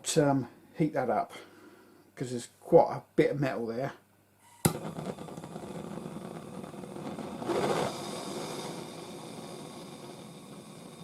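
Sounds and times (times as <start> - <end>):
gas torch flame hissing: 4.4 - 11.0
torch igniter click: 4.5 - 6.0.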